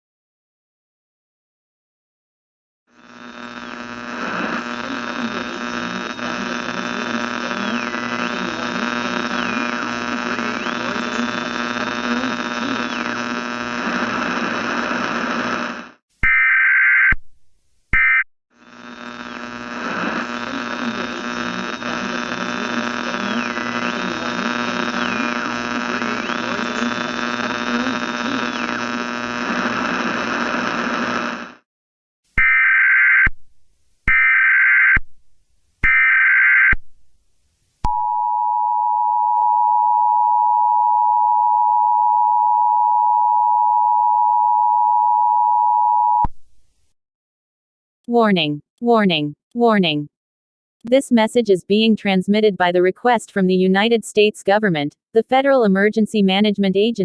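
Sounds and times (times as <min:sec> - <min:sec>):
harsh electronic static noise: 0:02.9 - 0:16.6, 0:18.0 - 0:31.7
steady hum: 0:03.0 - 0:16.0, 0:18.6 - 0:31.6
loud electronic tone burst: 0:03.0 - 0:17.1, 0:18.0 - 0:31.6.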